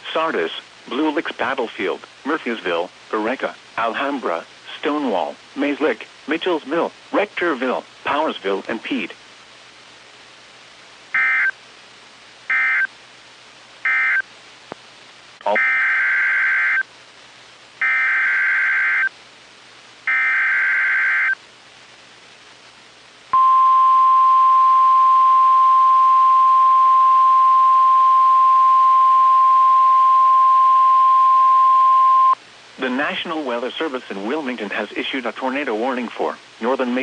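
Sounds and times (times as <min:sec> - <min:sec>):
steady warning alarm tone: 0:15.5 - 0:16.8, 0:17.8 - 0:19.1, 0:20.1 - 0:21.4.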